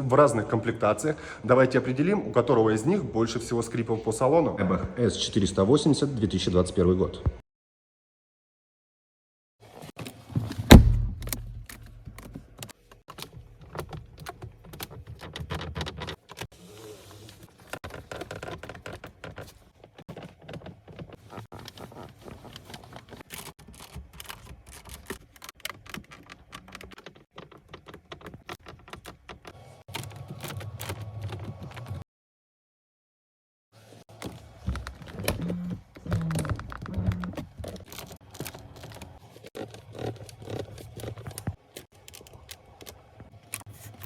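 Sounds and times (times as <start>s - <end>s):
loud thump: 10.7s - 11.8s
interior trim ticks and creaks: 11.2s - 16.5s, 17.7s - 32.0s, 34.2s - 43.7s.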